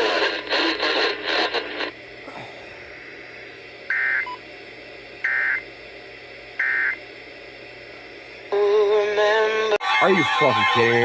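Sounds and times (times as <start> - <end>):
buzzy data squawks: 3.9 - 4.4, 5.2 - 5.6, 6.6 - 7.0.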